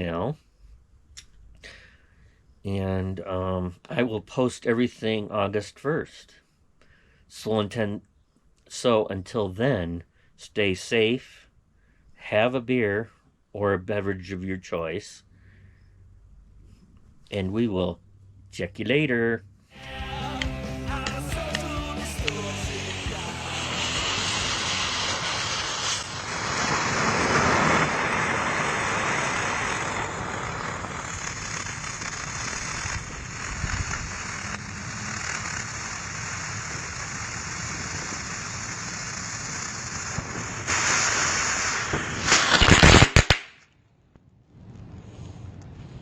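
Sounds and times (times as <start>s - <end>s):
fireworks hissing and crackling: 19.7s - 43.7s, 44.5s - 46.0s.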